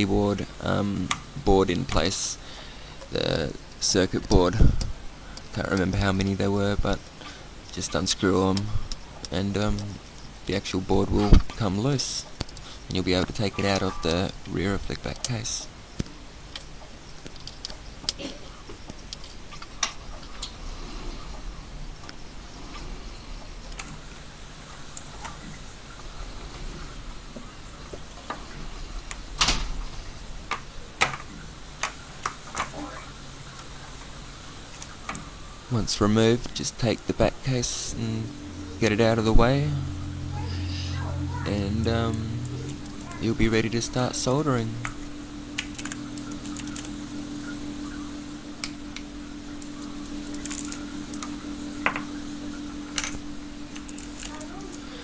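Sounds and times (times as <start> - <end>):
low electrical hum: 0.0 - 55.0.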